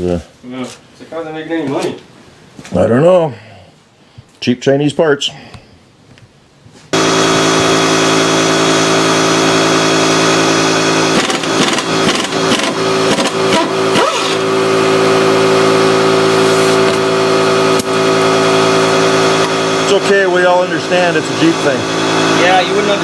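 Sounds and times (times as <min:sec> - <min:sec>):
engine running: 0:06.9 - 0:23.0.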